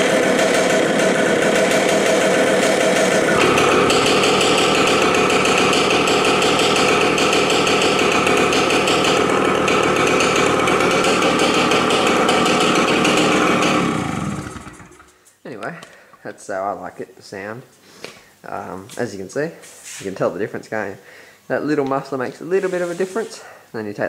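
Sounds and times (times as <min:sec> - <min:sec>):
motorcycle engine running: 0:00.0 - 0:15.1.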